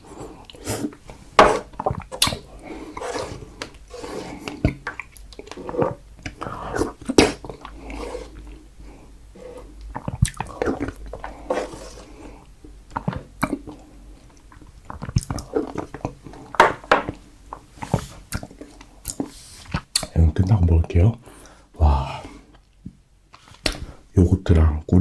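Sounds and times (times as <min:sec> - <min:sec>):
mouth clicks and smacks: 0:09.8 - 0:11.2, 0:12.9 - 0:13.8, 0:14.4 - 0:16.4, 0:17.5 - 0:20.2, 0:22.5 - 0:23.9
chewing strawberries: 0:09.8 - 0:11.3.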